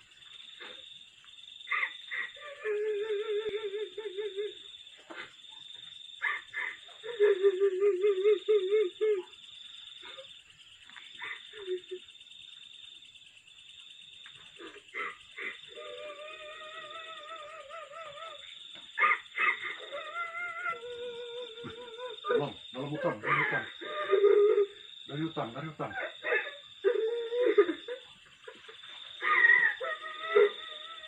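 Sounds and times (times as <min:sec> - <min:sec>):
insects chorus: 0:00.0 - 0:31.0.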